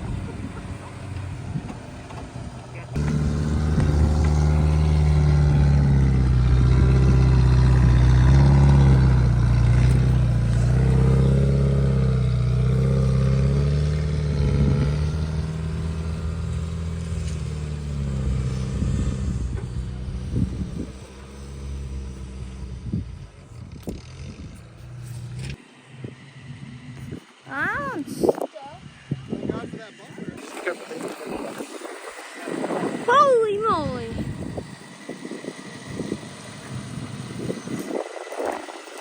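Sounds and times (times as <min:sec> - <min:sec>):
off-road vehicle engine revving: 0:00.0 - 0:39.0
knocks and clatter: 0:03.0 - 0:11.2.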